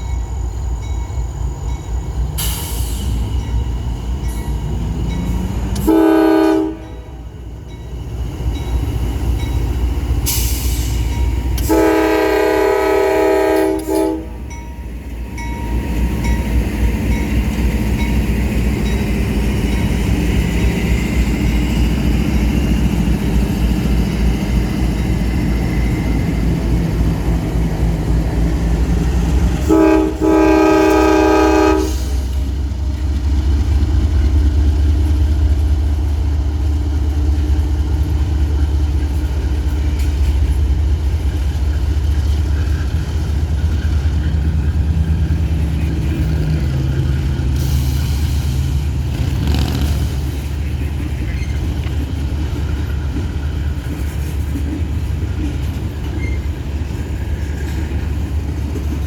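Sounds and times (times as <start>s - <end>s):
diesel locomotive engines rumbling: 0.0s - 59.0s
locomotive air horn blast: 5.8s - 7.2s, 11.6s - 14.4s, 29.6s - 32.4s.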